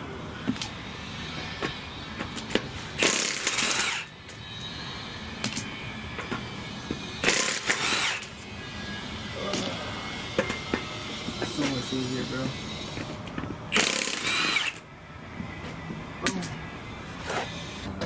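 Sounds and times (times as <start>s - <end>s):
impact wrench bursts: 3.0s - 4.4s, 7.2s - 8.4s, 13.7s - 14.8s.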